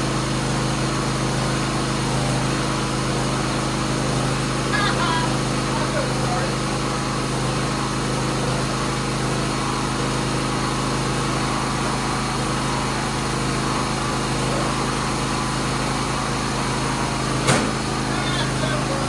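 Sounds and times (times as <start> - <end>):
garden tractor engine running: 0.0 - 19.0
sharp click: 17.5 - 18.0.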